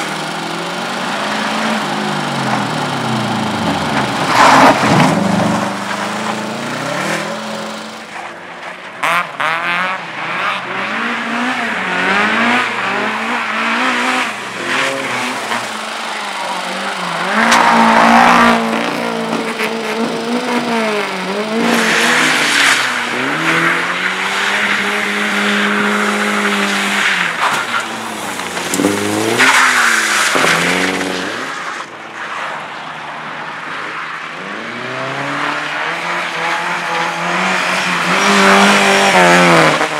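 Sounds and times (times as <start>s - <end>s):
race car engine revving: 0.0s - 32.0s, 34.0s - 39.9s.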